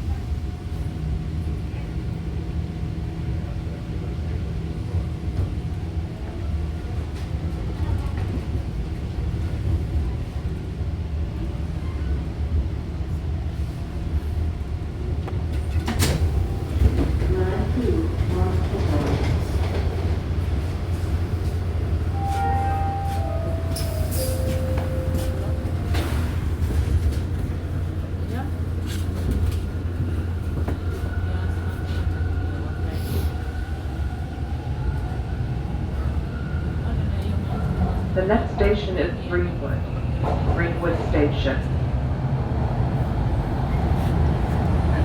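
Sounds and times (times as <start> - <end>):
subway train rumble: 0.0 - 45.0
train whine: 15.2 - 34.2.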